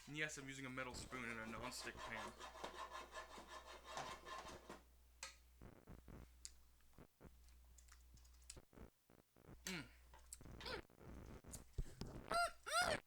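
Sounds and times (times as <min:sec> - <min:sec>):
faint clicks and taps: 0:04.0 - 0:12.3.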